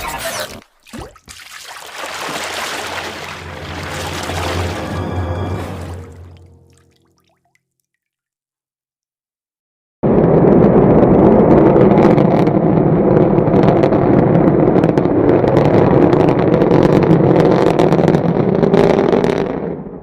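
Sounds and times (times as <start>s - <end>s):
rocket roar: 10.0s - 20.0s.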